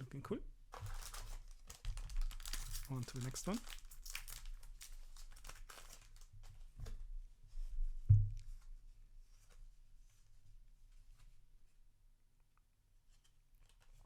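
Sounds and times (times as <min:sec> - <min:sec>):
wrapper crinkling and tearing: 0:00.7 - 0:06.4
dull thump: 0:08.1 - 0:08.6.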